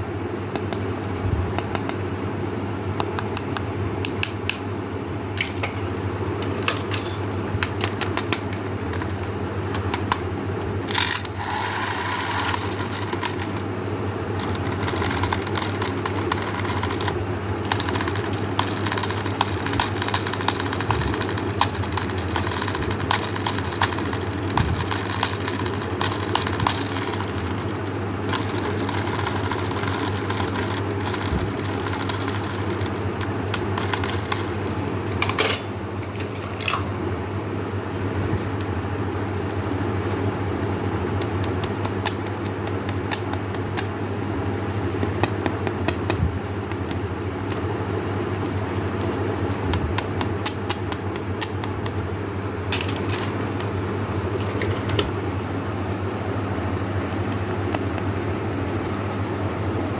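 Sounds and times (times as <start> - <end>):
steady low hum: 0.0 - 59.9
rapid small clicks and taps: 1.6 - 2.3, 3.0 - 4.7, 7.6 - 10.3, 14.3 - 35.2, 41.2 - 44.0, 45.0 - 47.6, 48.4 - 52.1.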